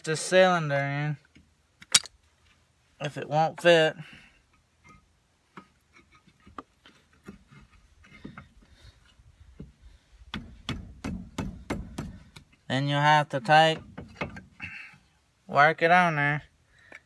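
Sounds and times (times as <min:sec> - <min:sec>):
metal tools clicking and knocking: 0:01.8 - 0:02.2.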